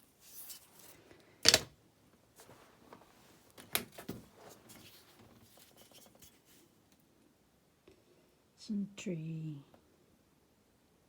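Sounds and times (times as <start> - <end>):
faint handling noise: 0.0 - 7.1.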